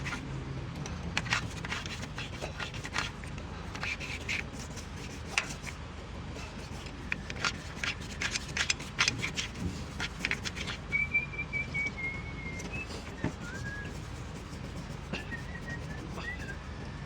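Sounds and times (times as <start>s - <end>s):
thin whistled tone: 10.6s - 17.0s.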